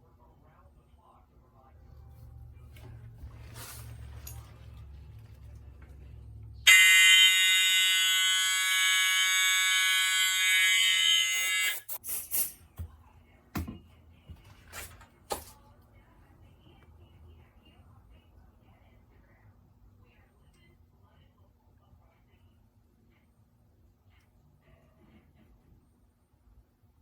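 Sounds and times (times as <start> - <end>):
fire alarm horn: 6.6 - 12.0.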